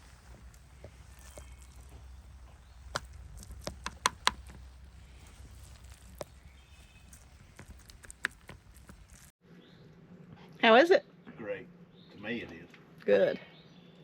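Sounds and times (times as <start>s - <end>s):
low steady hum: 0.0s - 12.5s.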